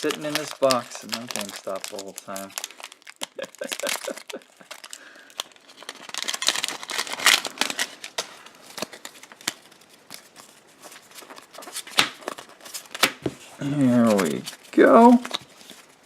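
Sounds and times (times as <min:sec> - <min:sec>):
foil wrapper snapping: 0:00.0 - 0:10.2
foil wrapper crinkling: 0:00.0 - 0:16.0.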